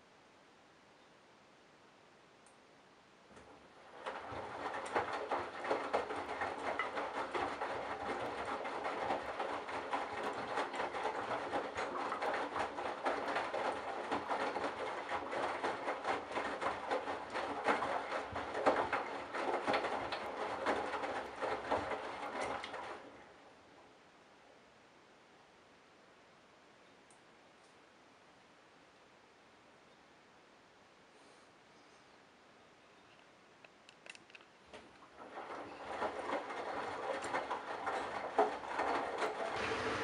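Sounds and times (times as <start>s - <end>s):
washing machine drum tumbling: 3.4s - 23.1s, 35.2s - 40.0s.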